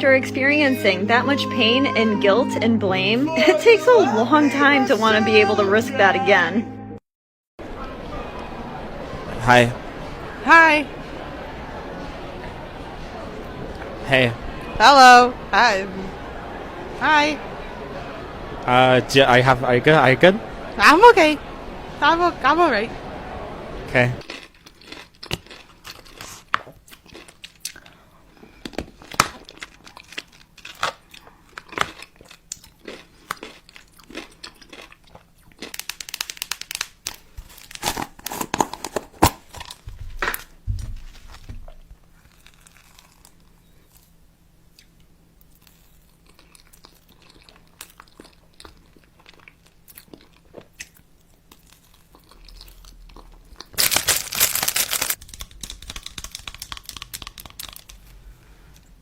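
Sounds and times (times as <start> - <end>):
chewing and crunching: 24.2 - 58.2
crinkling: 35.5 - 44.1, 53.6 - 58.2.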